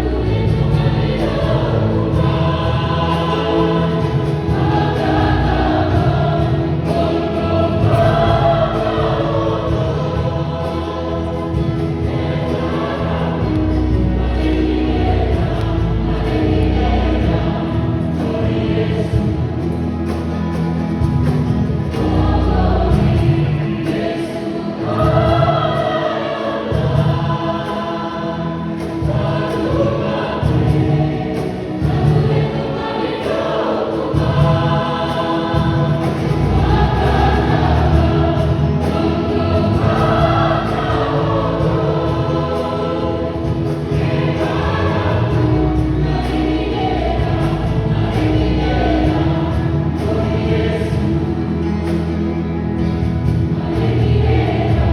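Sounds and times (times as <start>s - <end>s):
sustained low bass: 0.0s - 23.8s, 35.6s - 54.9s
choir singing: 0.0s - 54.9s.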